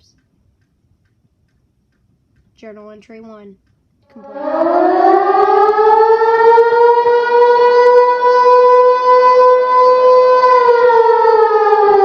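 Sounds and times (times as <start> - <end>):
tornado warning siren wailing: 4.1 - 12.0.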